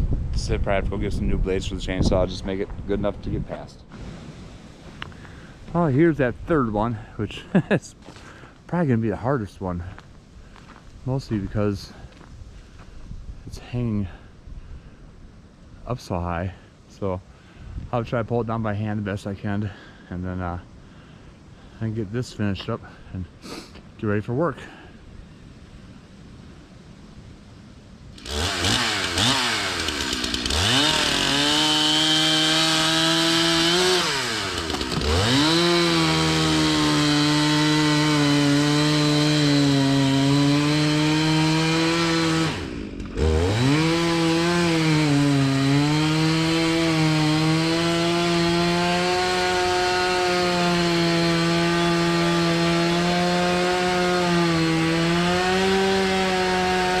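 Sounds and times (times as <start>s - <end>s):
chainsaw cutting wood: 28.1s - 57.0s.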